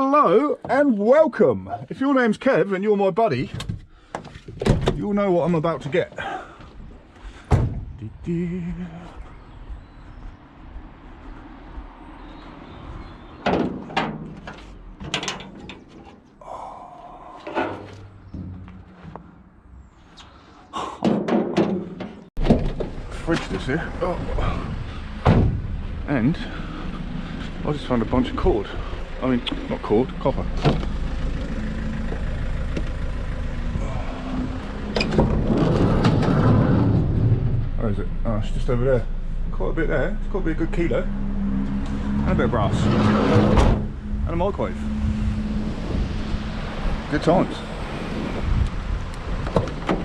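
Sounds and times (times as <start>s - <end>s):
heavy clunks and knocks: 7.3s - 8.0s, 13.4s - 16.3s, 17.4s - 19.7s, 20.8s - 23.0s, 25.2s - 25.8s, 34.9s - 37.2s
vehicle engine idling: 22.8s - 35.0s.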